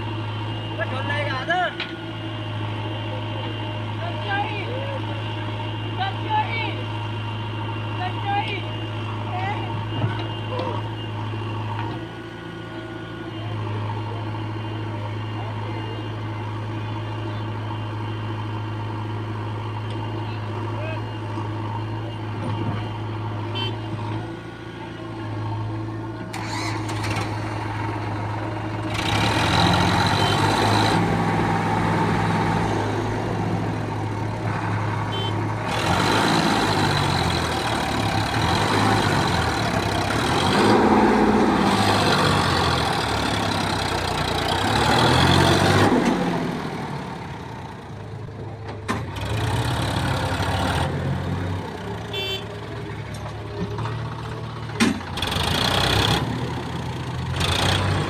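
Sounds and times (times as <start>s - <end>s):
diesel engine revving: 0.0s - 58.0s.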